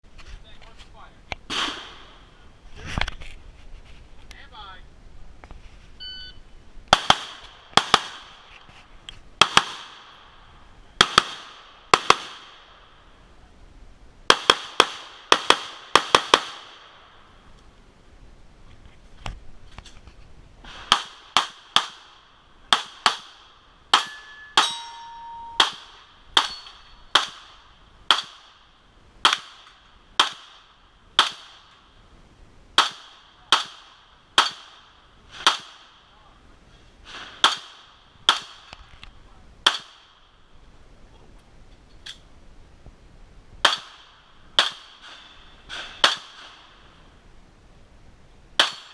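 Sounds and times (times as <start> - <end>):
gunshots: 1.5 - 2.2, 6.9 - 8.4, 9.4 - 10.2, 11.0 - 12.6, 14.3 - 16.9, 20.6 - 24.7, 25.6 - 28.6.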